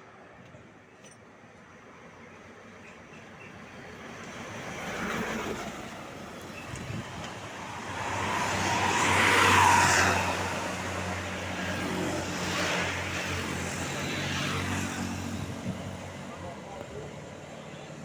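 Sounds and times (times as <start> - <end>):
vehicle passing close: 7.5 - 16.3.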